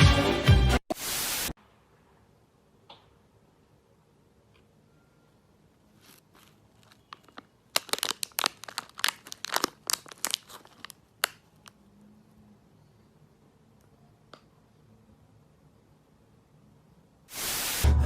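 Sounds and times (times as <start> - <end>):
crinkling and crackling: 5.8 - 11.9.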